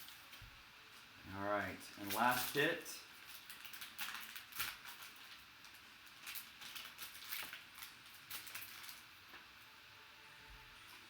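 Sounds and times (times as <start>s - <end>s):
rustling of cards and packaging: 1.0s - 9.4s.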